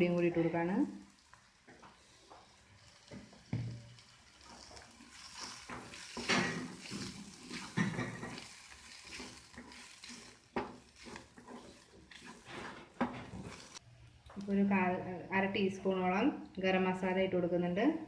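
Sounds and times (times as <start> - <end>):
low sizzle of frying onions: 0.0 - 13.8
spoon scraping pan: 1.6 - 13.8.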